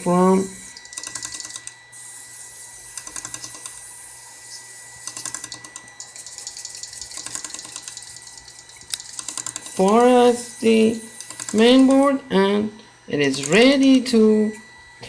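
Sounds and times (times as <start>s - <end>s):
rapid fine clicks: 0.8s - 1.8s, 3.0s - 3.8s, 5.0s - 9.8s, 11.2s - 12.0s, 13.3s - 13.6s.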